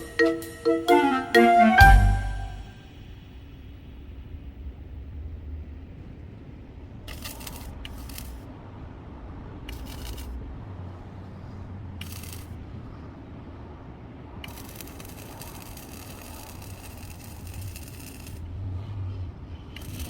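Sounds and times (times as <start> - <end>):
welding arc crackle: 7.1 - 8.4, 14.5 - 18.4.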